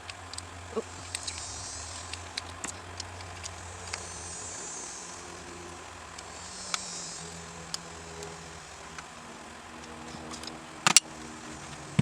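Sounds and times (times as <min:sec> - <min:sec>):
small metal parts clicking: 0:00.0 - 0:04.3
soft hissing: 0:00.0 - 0:12.0
steady low hum: 0:00.0 - 0:12.0.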